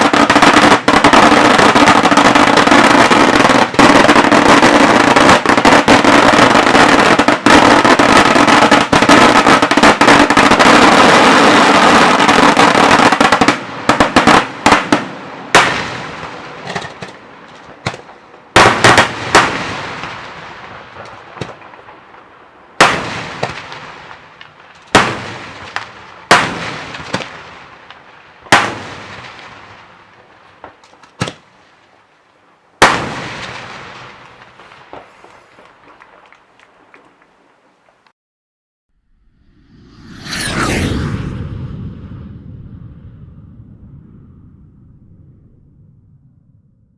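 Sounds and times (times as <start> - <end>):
echoing firework bangs: 0.0 - 21.9, 22.8 - 30.0, 32.8 - 36.2
fireworks bangs: 0.0 - 22.0, 22.8 - 31.5, 32.8 - 37.0.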